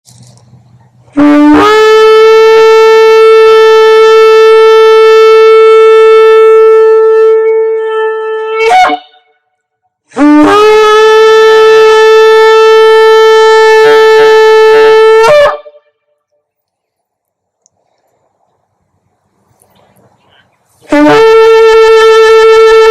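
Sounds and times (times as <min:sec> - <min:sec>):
shofar blasts: 0:01.1 - 0:16.1, 0:20.8 - 0:22.9.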